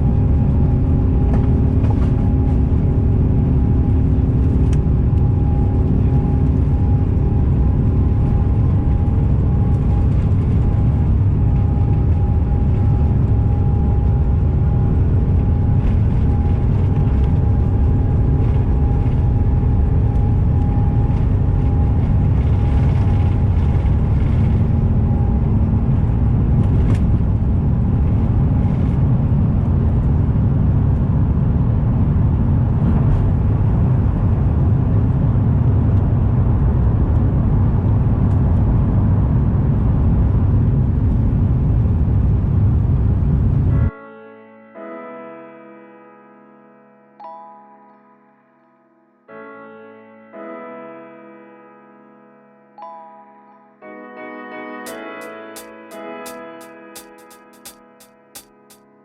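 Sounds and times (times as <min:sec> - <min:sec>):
airplane cabin rumble: 0:00.0 - 0:43.9
jet engine hum tones: 0:00.0 - 0:43.9.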